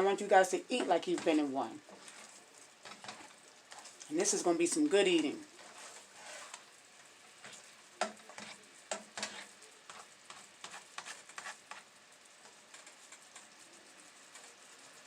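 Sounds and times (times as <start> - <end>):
faint sizzle: 0.0 - 15.0
utensil stirring and tapping in pan: 0.0 - 15.0
clicks and scrapes: 1.9 - 4.1, 7.4 - 11.8.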